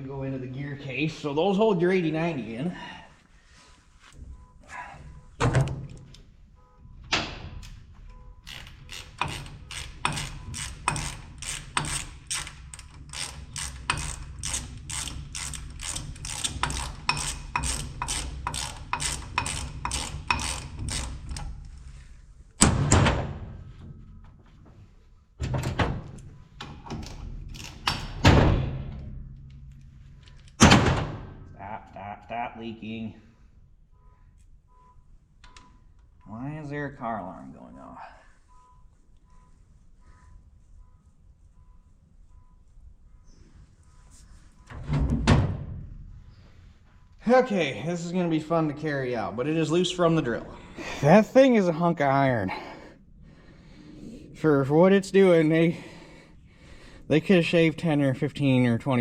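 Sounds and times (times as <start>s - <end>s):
ratchet wrench clicking: 8.4s - 21.6s.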